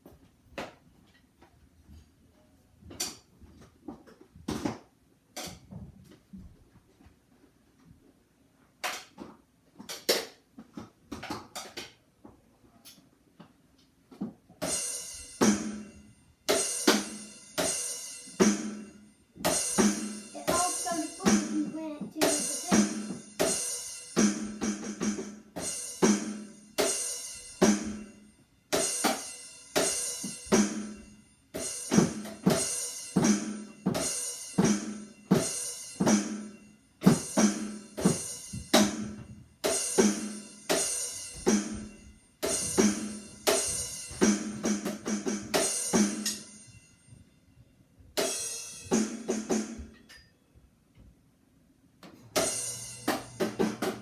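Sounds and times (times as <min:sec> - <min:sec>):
drum kit quick hits: 0:16.5 - 0:28.1, 0:31.6 - 0:46.4, 0:52.3 - 0:54.0
cymbal ringing: 0:45.6 - 0:47.2, 0:52.4 - 0:53.6.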